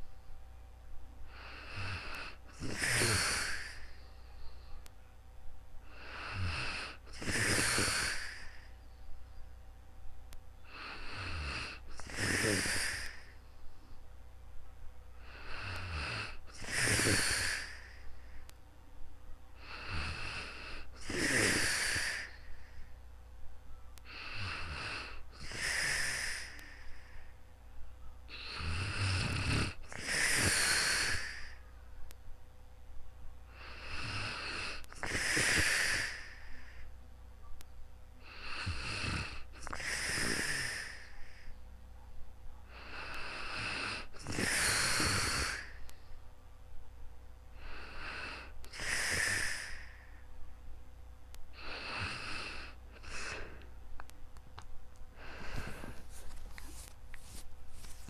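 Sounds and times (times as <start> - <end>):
person snoring: 1.3 - 4.0, 5.9 - 8.7, 10.7 - 13.4, 15.2 - 18.1, 19.6 - 22.7, 24.0 - 27.3, 28.3 - 31.6, 33.6 - 36.8, 38.2 - 41.5, 42.7 - 45.9, 47.6 - 50.2, 51.6 - 53.6, 55.2 - 56.8.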